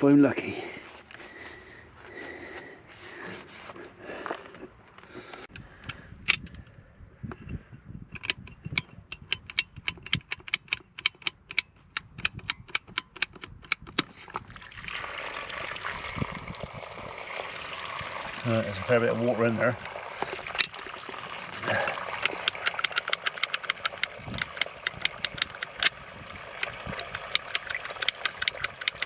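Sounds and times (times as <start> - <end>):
water running and trickling: 14.4 - 23.1, 23.7 - 29.0
rapid sharp clicks: 22.2 - 26.0, 26.6 - 29.0.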